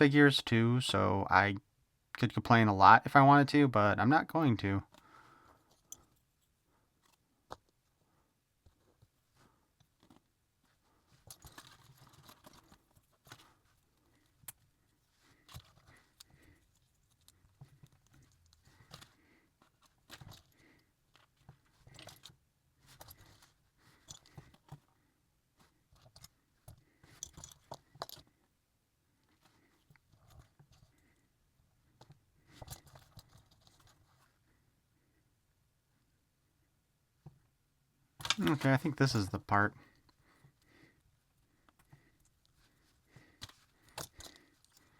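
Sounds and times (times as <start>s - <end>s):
plastic parts clicking and snapping: 38.2s - 38.7s.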